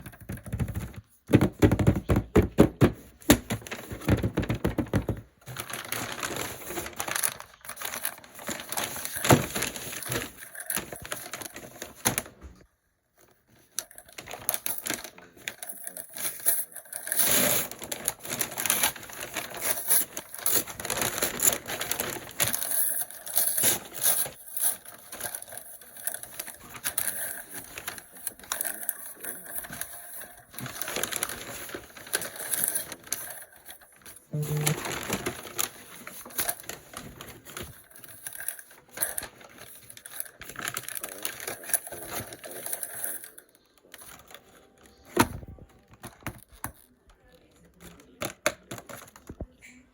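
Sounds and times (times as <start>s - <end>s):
paper and plastic wrap crinkling: 0.0s - 49.5s.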